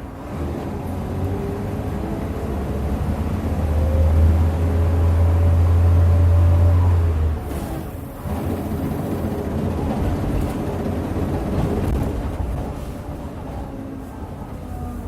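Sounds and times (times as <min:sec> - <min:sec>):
bus engine drone: 0:00.0 - 0:15.0.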